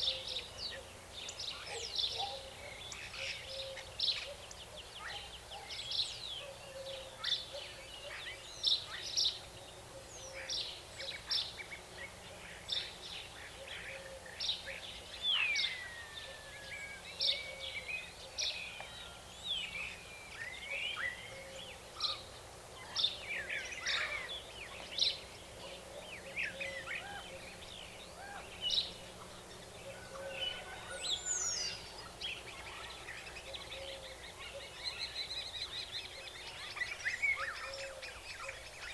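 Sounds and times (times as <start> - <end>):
faint background hiss: 0.0 - 38.9
birds chirping: 10.2 - 38.9.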